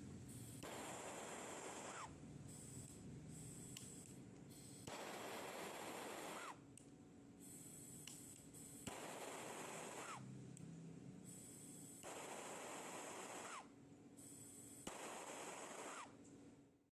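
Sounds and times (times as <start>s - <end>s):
torch ignition click: 3.6s - 5.2s, 7.9s - 10.2s.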